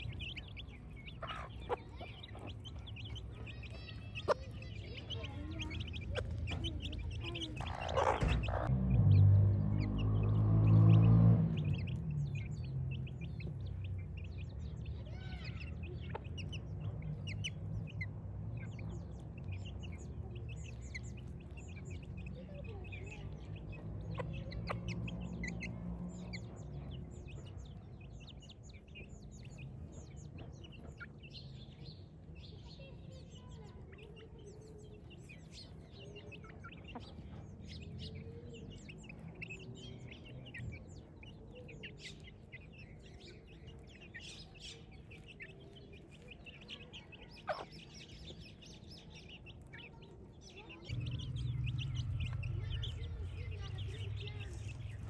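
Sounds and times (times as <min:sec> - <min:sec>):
hens clucking: 0:00.0 - 0:08.7, 0:15.0 - 0:27.0, 0:50.9 - 0:55.0
chicks peeping: 0:00.0 - 0:55.0.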